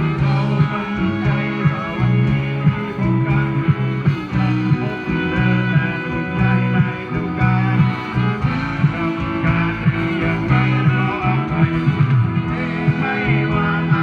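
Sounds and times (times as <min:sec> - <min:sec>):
guitar-led instrumental music: 0:00.0 - 0:14.0
steady bass notes: 0:00.0 - 0:14.0.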